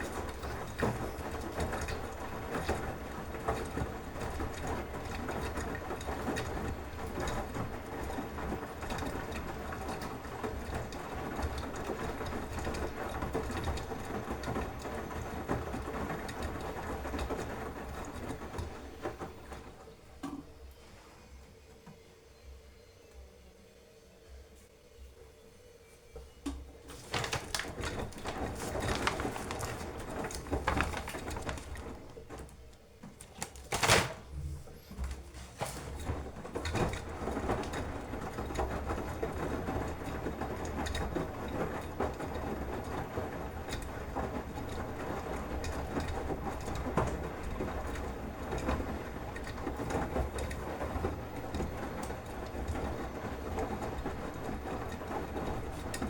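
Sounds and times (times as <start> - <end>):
washing machine running: 0.0 - 23.4, 26.1 - 56.0
drum clicking and rattling: 27.0 - 33.7.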